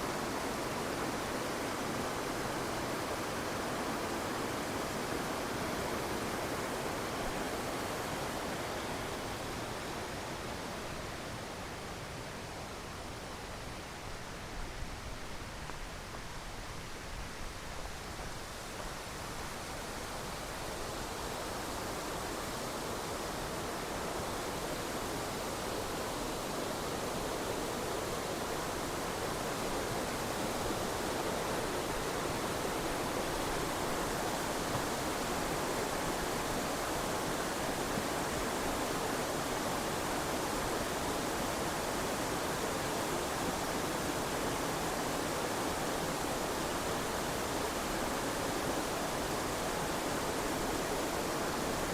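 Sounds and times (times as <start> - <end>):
waterfall roaring: 0.0 - 51.9.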